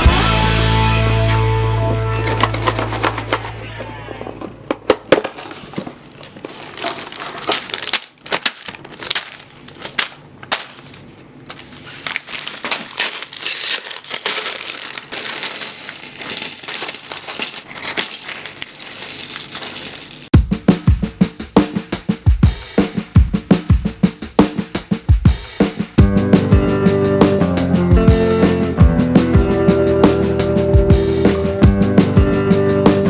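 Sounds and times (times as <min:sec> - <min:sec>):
music: 0:00.0 - 0:03.8, 0:20.3 - 0:33.0
plastic bags crinkling: 0:02.2 - 0:20.3
plastic bricks clicking and rattling: 0:02.3 - 0:03.6, 0:04.4 - 0:20.3.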